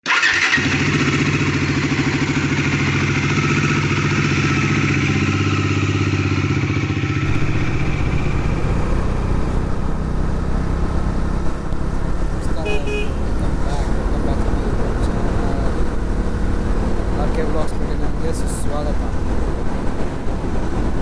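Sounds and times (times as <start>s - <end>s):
motorcycle engine running: 0.1s - 21.0s.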